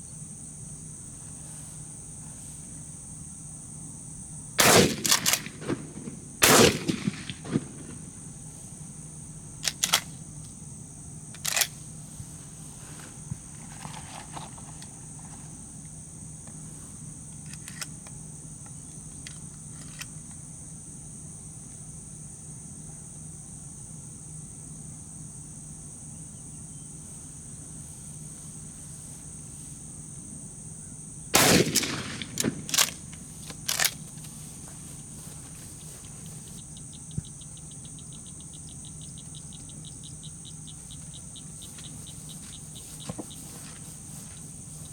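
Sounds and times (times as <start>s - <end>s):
fast insect trill: 0.0s - 44.9s
high insect drone: 0.0s - 44.9s
shotgun shots: 4.6s - 8.2s, 31.4s - 34.1s.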